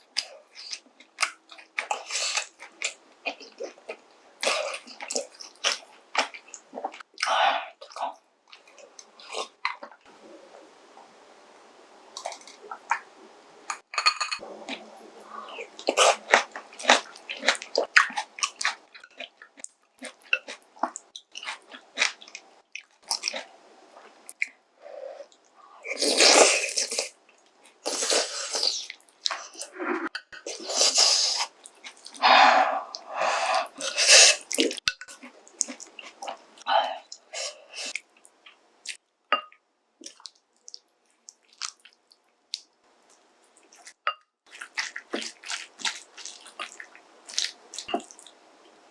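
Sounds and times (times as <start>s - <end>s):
wet chewing and biting: 44.5s - 48.3s.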